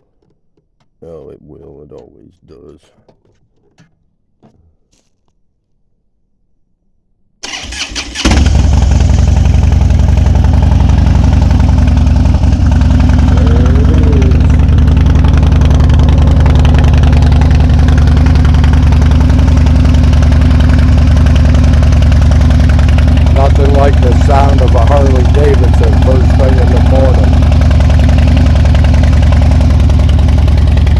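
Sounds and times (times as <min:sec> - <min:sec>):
motorcycle engine starting and idling: 0:07.4 - 0:30.9.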